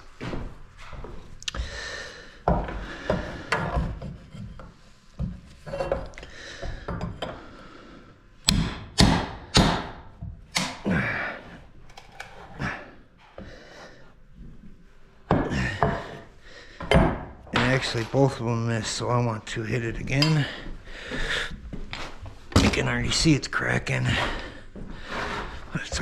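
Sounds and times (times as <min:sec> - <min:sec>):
knocking and scraping on wood: 0:02.5 - 0:07.4
hammer nailing into wood: 0:08.5 - 0:10.8.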